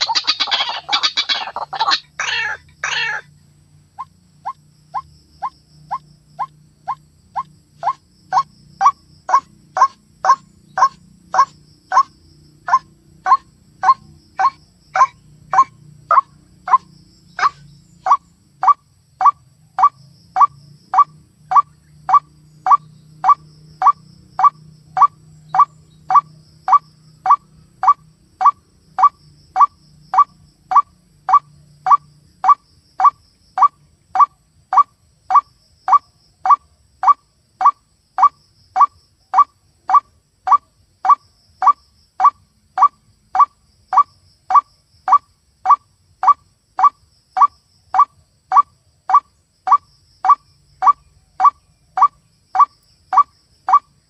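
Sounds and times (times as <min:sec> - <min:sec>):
waterhen calls: 0:00.0 - 0:03.3, 0:04.0 - 0:12.1, 0:12.7 - 0:16.8, 0:17.4 - 0:38.3.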